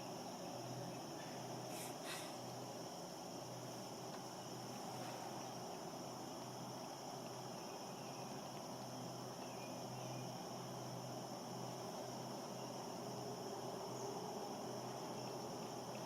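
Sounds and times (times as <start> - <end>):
insects trilling: 0.0 - 16.0.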